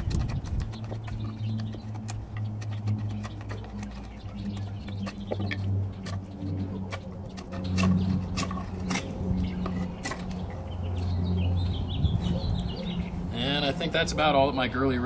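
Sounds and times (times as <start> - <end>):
knife whittling wood: 0.0 - 10.4
steady low hum: 0.0 - 15.0.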